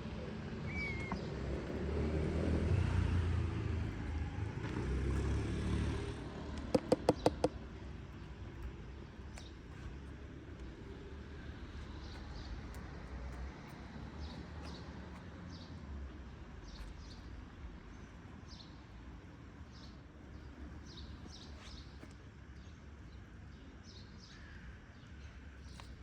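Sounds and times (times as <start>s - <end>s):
car passing: 1.2s - 6.7s.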